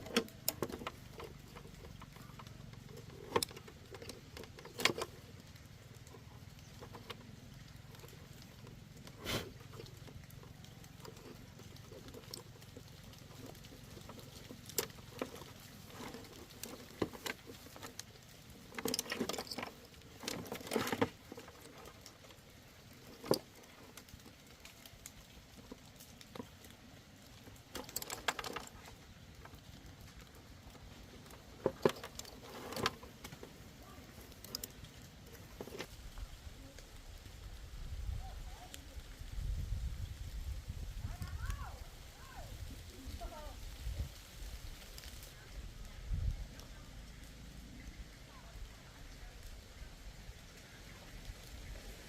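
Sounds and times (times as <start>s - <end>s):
hand tools clicking and rattling: 0.0s - 36.0s.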